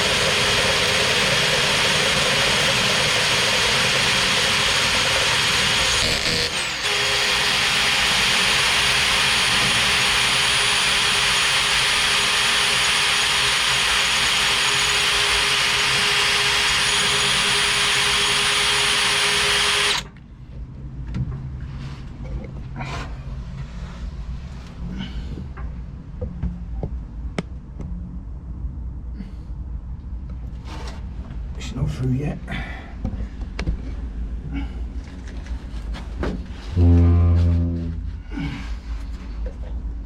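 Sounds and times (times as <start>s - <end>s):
power drill boring into steel: 0.0s - 20.1s.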